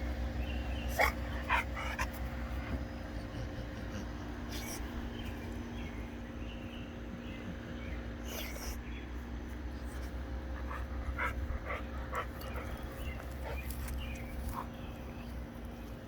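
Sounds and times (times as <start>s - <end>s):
steady low hum: 0.0s - 16.0s
dog panting: 1.0s - 5.1s, 9.8s - 15.0s.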